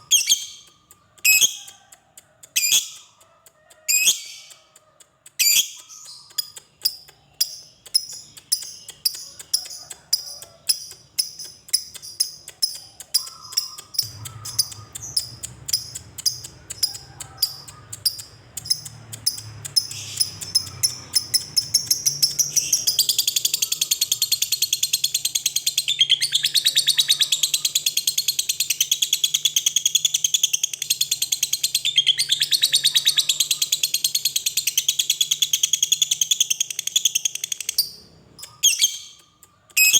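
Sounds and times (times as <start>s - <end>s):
lovebird chips: 0.0s - 26.6s
lovebird rapid chatter: 0.0s - 39.9s.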